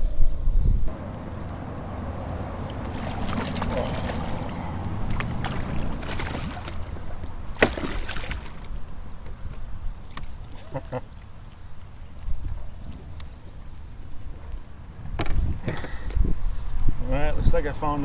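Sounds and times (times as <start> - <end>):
water sloshing against hull: 0.9 - 11.4.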